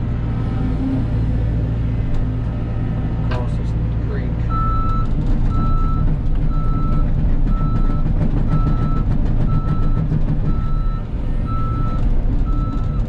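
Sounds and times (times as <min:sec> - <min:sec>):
excavator diesel engine running: 0:00.0 - 0:13.0
travel alarm beeping: 0:04.5 - 0:09.0.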